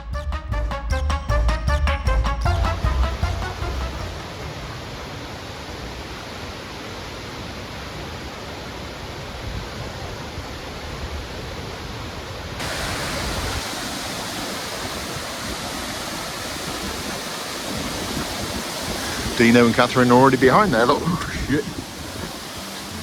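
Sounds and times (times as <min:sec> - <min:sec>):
waterfall rushing: 0:02.7 - 0:23.0.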